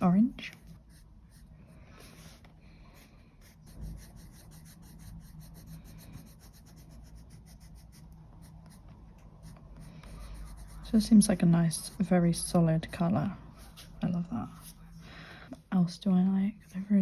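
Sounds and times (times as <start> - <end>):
coloured pencil rubbing on paper: 0.0 - 12.2.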